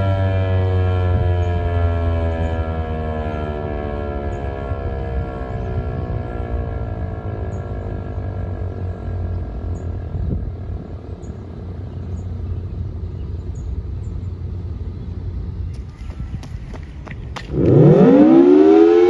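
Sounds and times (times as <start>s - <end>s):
warning siren winding down: 0.0s - 12.5s, 17.5s - 19.0s
low rumble: 0.0s - 19.0s.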